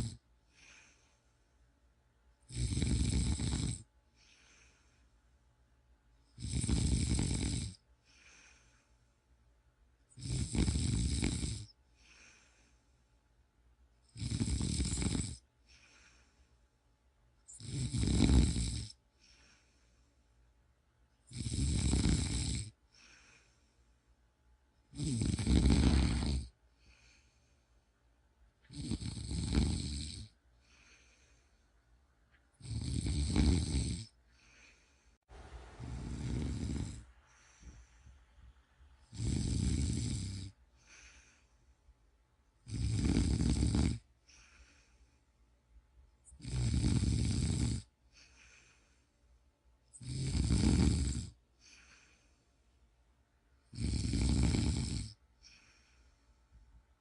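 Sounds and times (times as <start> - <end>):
person snoring: 0.0 - 1.0, 2.5 - 4.8, 6.4 - 8.7, 10.1 - 12.7, 14.1 - 16.4, 17.5 - 19.7, 21.3 - 23.6, 24.9 - 27.4, 28.7 - 31.4, 32.6 - 34.9, 35.5 - 37.9, 39.0 - 41.5, 42.6 - 44.9, 46.2 - 48.9, 49.9 - 52.2, 53.7 - 56.0
faint breath: 0.0 - 1.6, 4.1 - 5.5, 8.0 - 9.4, 11.8 - 13.3, 15.6 - 16.9, 19.1 - 20.6, 22.8 - 24.3, 25.8 - 28.1, 30.5 - 32.0, 34.2 - 39.1, 40.4 - 42.0, 44.2 - 45.5, 48.0 - 49.5, 51.5 - 52.9, 55.3 - 56.8.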